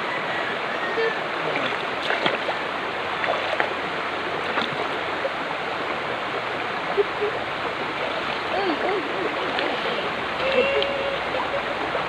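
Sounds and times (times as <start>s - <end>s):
stream rushing over stones: 0.0s - 12.0s
faint small splashes: 1.5s - 2.6s.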